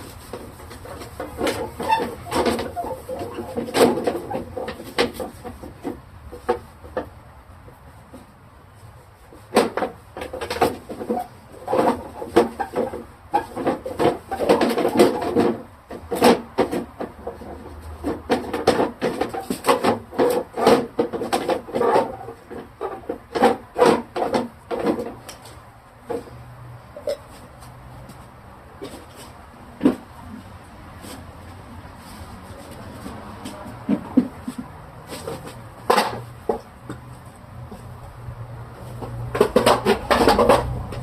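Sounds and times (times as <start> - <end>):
refrigerator parts knocking and clunking: 0.0 - 7.2, 9.4 - 26.4, 28.8 - 30.2, 32.9 - 37.9, 38.8 - 41.0.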